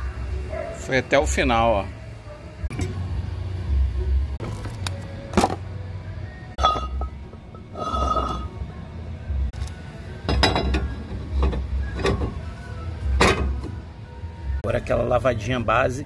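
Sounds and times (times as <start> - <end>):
metal parts clinking: 6.6 - 8.5, 10.3 - 12.4
metallic ringing note: 6.6 - 8.7.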